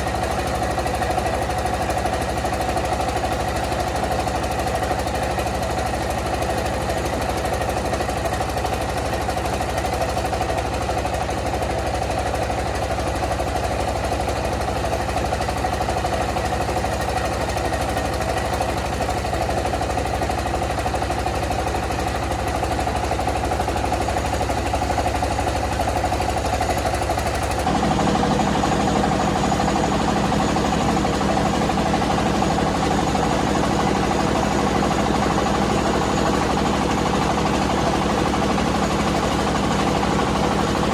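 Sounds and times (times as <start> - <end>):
milling machine rattling: 25.6 - 40.9.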